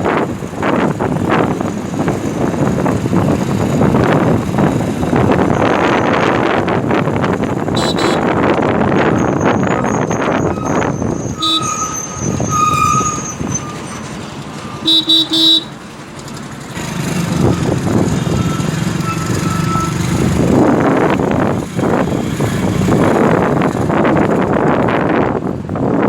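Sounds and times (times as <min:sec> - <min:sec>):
road traffic: 0:00.0 - 0:26.0
car horn honking: 0:07.7 - 0:08.4, 0:09.8 - 0:13.2, 0:14.7 - 0:15.8.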